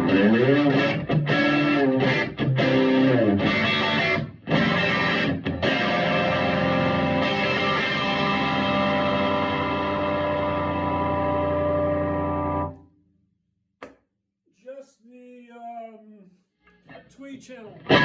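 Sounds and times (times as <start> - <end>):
overdriven electric guitar: 0.0 - 12.8, 17.7 - 18.0.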